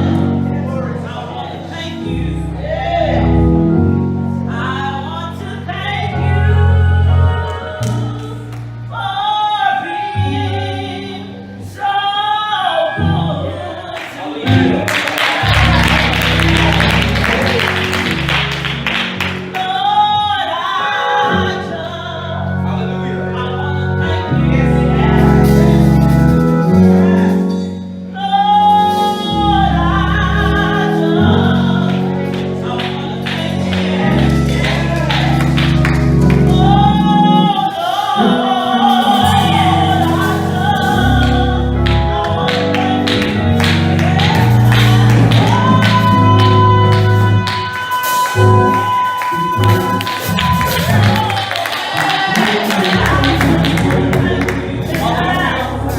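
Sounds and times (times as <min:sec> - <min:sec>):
person singing: 0:00.0 - 0:55.9
instrumental accompaniment: 0:14.4 - 0:55.9.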